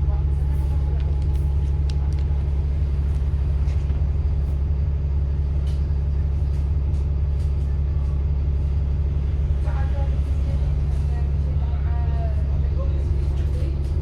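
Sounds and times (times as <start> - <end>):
bus engine humming: 0.0 - 14.0.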